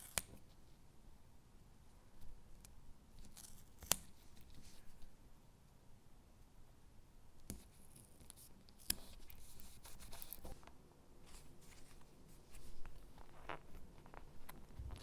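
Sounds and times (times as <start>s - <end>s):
scratchy paper rustles: 7.6s - 15.0s.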